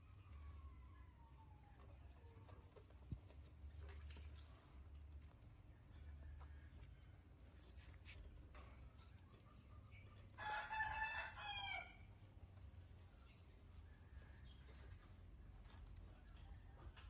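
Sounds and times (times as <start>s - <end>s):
rooster crowing: 10.4s - 12.1s.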